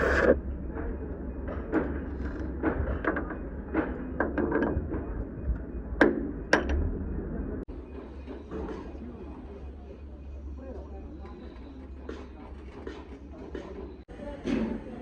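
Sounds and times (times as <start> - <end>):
steady low hum: 0.0 - 10.9
knocks and clanks of hand tools: 1.5 - 5.2, 6.0 - 6.9.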